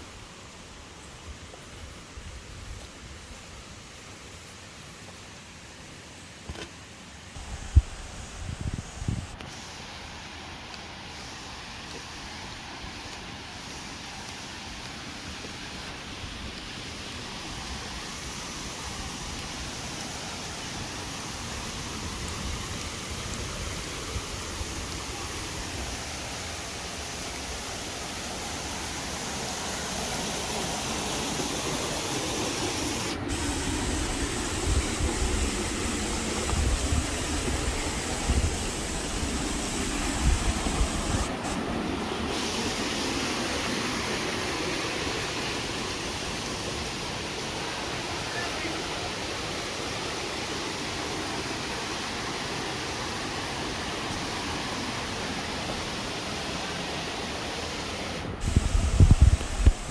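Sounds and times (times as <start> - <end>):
river water rushing: 9.5 - 59.9.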